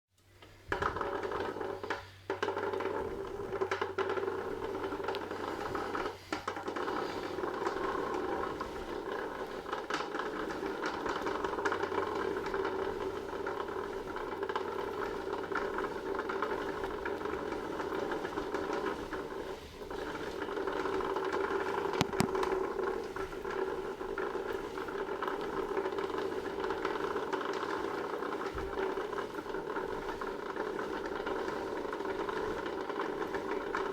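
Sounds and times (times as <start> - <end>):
bike rollers grating: 0.2 - 33.9.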